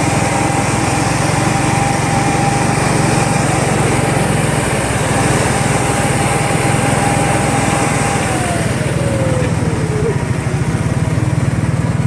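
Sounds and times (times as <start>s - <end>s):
small engine running: 0.0s - 12.0s
thin whine: 5.0s - 10.8s.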